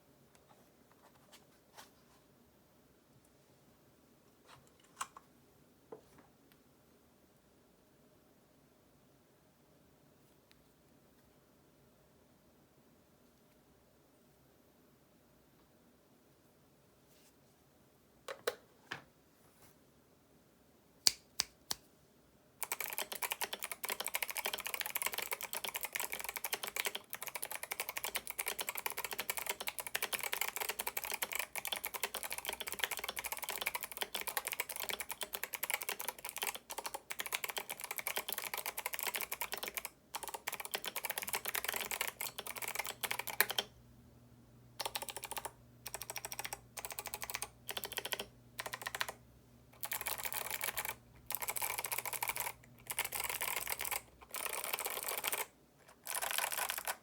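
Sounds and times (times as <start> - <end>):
mechanical keyboard typing: 22.6 - 43.7, 44.8 - 49.2, 49.8 - 57.0.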